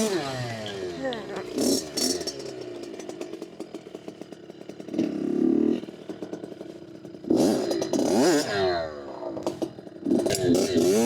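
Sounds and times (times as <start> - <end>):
dirt bike engine revving: 0.0 - 11.0.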